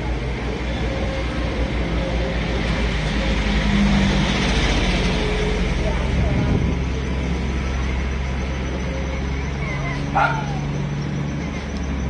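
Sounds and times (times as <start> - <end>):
vehicle rumble: 0.0 - 12.0.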